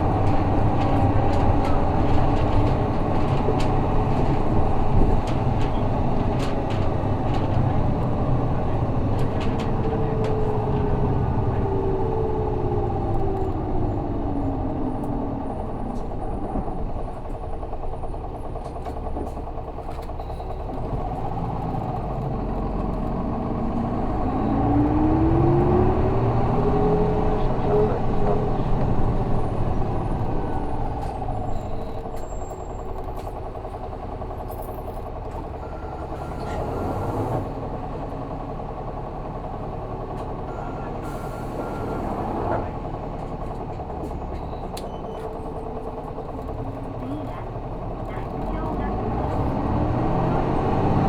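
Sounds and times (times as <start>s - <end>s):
small clicks and rattles in cabin: 0.0s - 11.6s, 14.4s - 23.1s
bus diesel engine whine: 0.0s - 51.0s.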